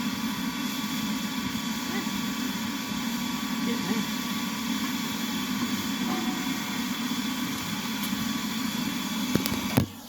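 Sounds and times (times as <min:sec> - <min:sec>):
forge rushing hum: 0:00.0 - 0:09.8.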